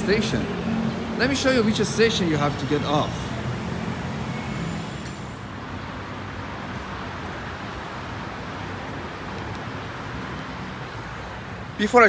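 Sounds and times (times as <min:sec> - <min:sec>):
electric train running: 0:03.1 - 0:05.5.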